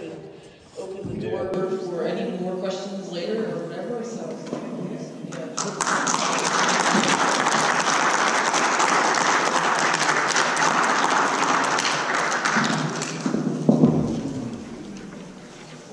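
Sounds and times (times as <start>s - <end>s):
audience applauding: 5.6s - 15.5s.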